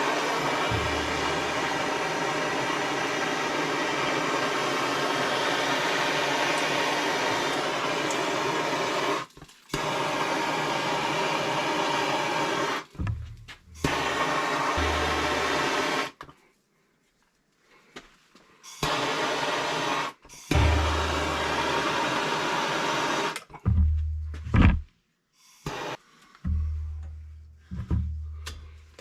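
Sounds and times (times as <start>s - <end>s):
gas torch flame hissing: 0.0s - 13.0s, 13.7s - 16.2s, 18.7s - 23.4s, 25.5s - 26.0s.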